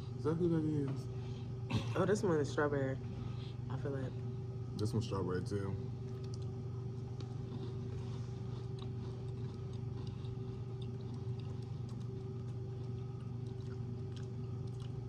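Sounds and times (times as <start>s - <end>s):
steady background hum: 0.0s - 15.0s
chewing and crunching biscuit: 5.8s - 15.0s.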